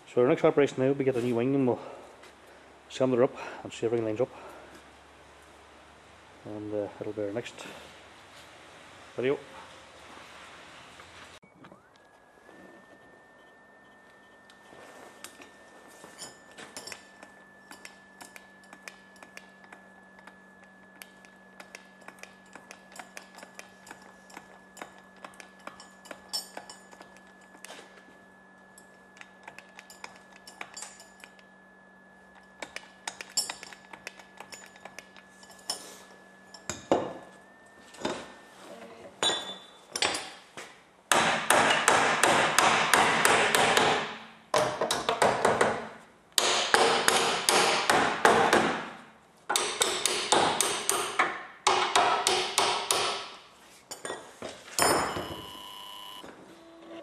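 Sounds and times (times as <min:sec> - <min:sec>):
electrical hum: 0:00.0 - 0:57.0
rapid hammering: 0:41.1 - 0:45.8, 0:46.4 - 0:53.4.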